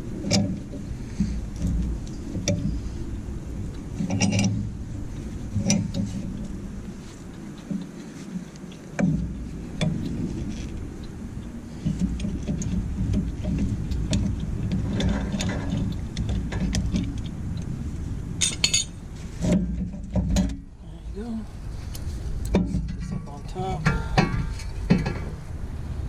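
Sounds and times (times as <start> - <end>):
steady low rumble: 0.0 - 26.0
metal tools clinking: 18.4 - 19.0.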